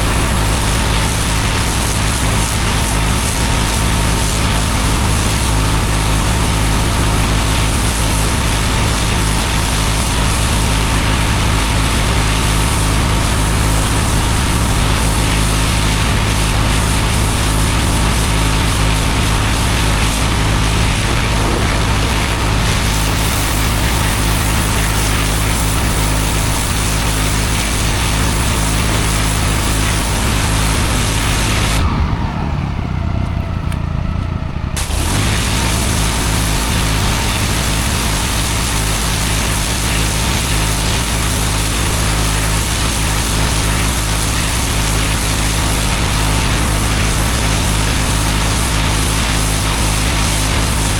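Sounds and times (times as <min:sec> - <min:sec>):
water jet hissing on paving: 0:00.0 - 0:32.2, 0:34.8 - 0:50.9
pressure washer engine running: 0:00.0 - 0:50.9.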